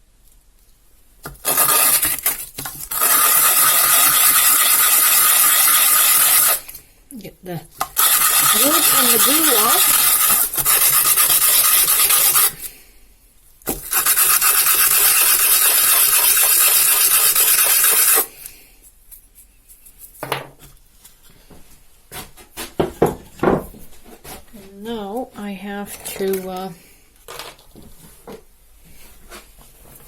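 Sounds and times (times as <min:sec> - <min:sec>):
sanding wood rasp: 0:08.0 - 0:12.6, 0:13.9 - 0:18.3.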